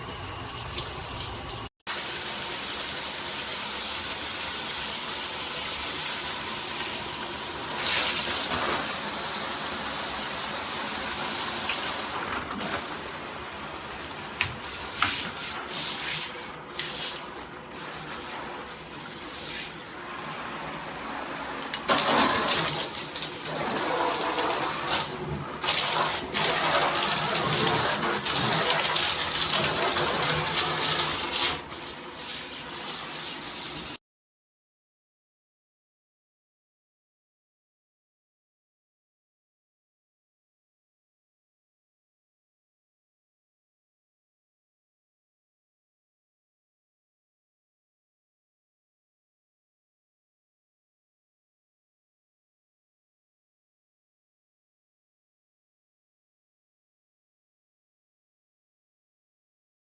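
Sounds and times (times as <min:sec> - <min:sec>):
shower head spraying water: 0:07.7 - 0:19.8, 0:21.4 - 0:34.0.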